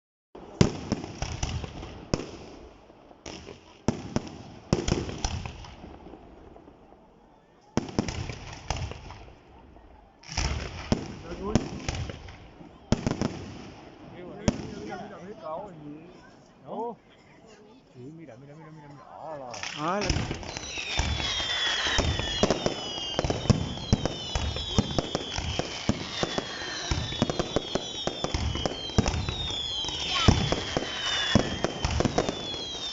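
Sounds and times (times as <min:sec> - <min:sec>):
fireworks bangs: 0:00.4 - 0:07.0, 0:07.7 - 0:15.2, 0:19.5 - 0:32.9
falling firework whistles: 0:19.6 - 0:32.9.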